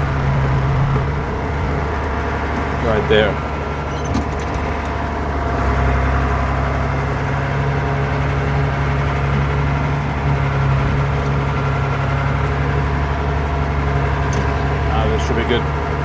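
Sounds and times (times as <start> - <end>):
tractor diesel engine running: 0.0 - 16.0.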